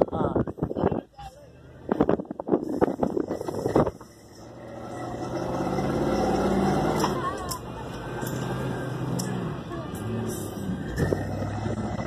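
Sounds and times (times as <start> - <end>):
off-road vehicle engine revving: 3.2 - 12.0.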